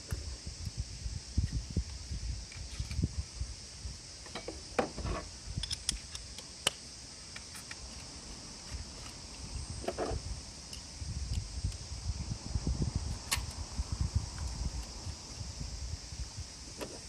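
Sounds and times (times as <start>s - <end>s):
high insect chirring: 0.0s - 17.0s
clicks of hard objects handled: 4.3s - 8.1s.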